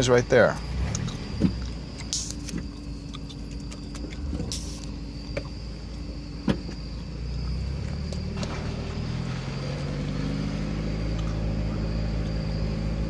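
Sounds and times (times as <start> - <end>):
car engine running: 0.0 - 13.0
clutch squealing: 0.0 - 13.0
brief hissing bursts: 4.5 - 4.9.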